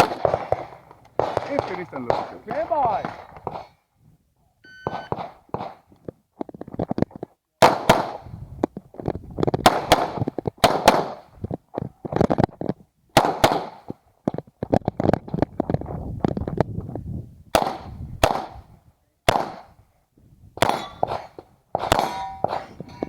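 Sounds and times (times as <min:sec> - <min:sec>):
pistol shots: 0:00.0 - 0:03.8, 0:04.8 - 0:05.9, 0:07.6 - 0:08.2, 0:09.6 - 0:11.3, 0:13.2 - 0:13.9, 0:17.5 - 0:19.8, 0:20.6 - 0:22.8
shot timer beep: 0:04.6 - 0:05.2.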